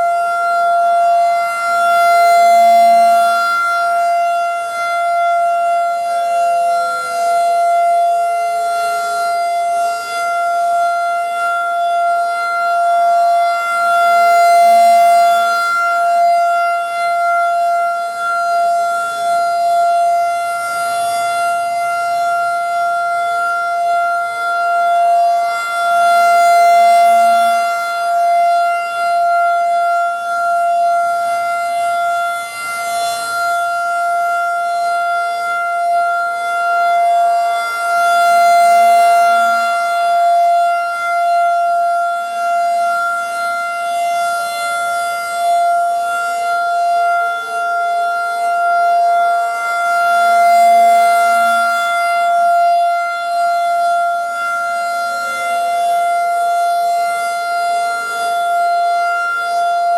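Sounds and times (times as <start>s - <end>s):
distant siren gliding down: 0.0s - 59.9s
warning siren alert tone: 0.0s - 59.9s.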